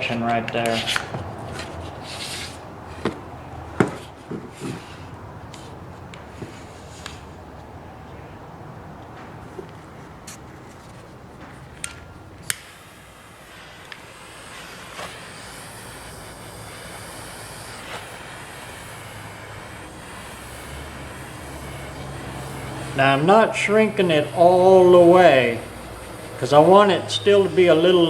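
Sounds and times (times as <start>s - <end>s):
butane torch hissing: 0.0s - 7.6s, 9.4s - 28.0s
sharp clicks: 11.4s - 12.8s.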